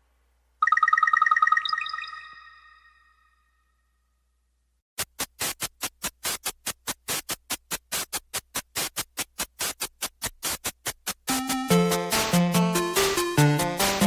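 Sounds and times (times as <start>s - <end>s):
electronic music with sharp beats: 5.0s - 14.0s.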